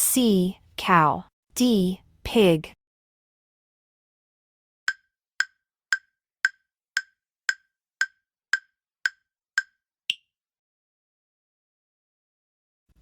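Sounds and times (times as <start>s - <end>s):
wood-block-like timer ticks: 4.9s - 10.3s.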